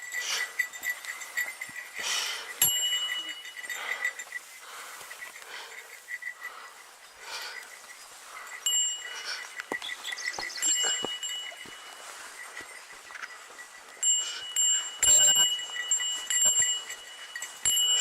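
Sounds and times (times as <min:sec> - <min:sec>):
small metal bell jingling: 0:00.0 - 0:18.0.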